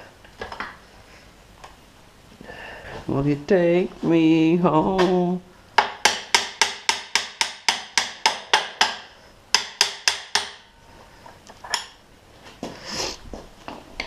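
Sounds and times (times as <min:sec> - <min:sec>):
hammer striking metal: 0:05.8 - 0:10.7.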